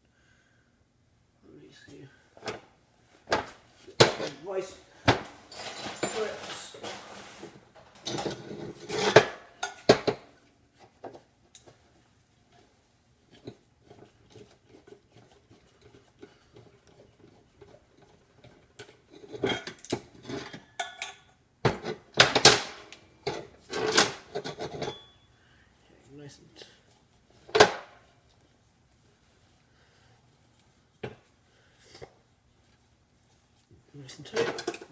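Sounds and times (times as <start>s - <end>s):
locking pliers clinking and rattling: 5.2s - 7.0s.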